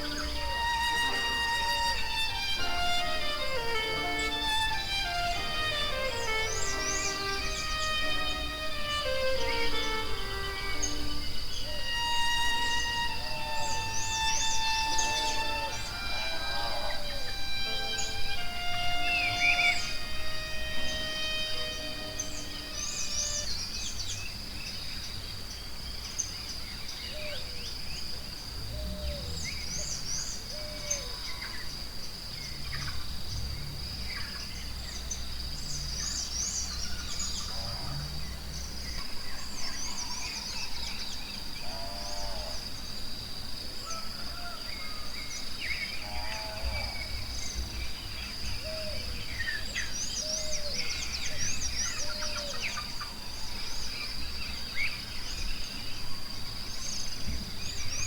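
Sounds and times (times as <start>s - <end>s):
low drawn-out calls: 0.0s - 23.5s
high-pitched insect drone: 0.0s - 24.1s
birds chirping and calling: 0.0s - 24.2s, 45.7s - 55.9s.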